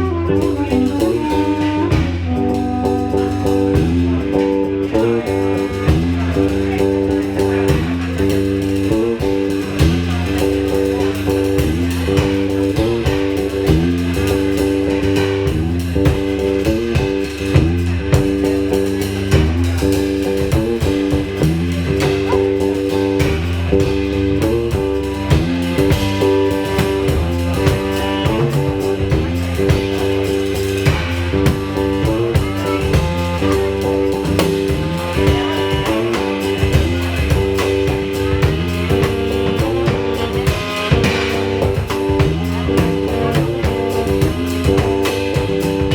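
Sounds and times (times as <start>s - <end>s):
blues guitar riff: 0.0s - 45.9s
drum kit keeping time: 0.0s - 45.9s.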